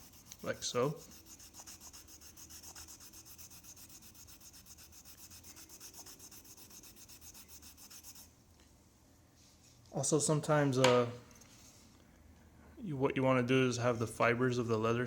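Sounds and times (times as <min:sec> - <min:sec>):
rubbing on a leather strop: 0:00.0 - 0:08.3.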